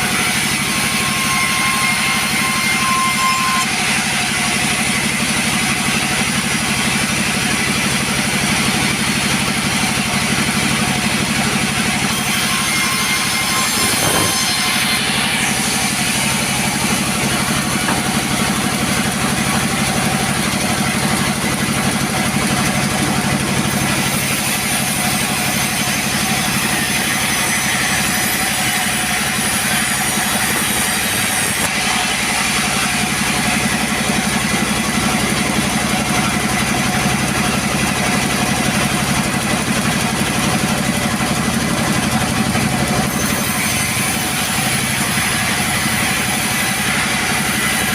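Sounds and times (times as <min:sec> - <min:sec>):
chainsaw cutting wood: 0:00.0 - 0:47.9.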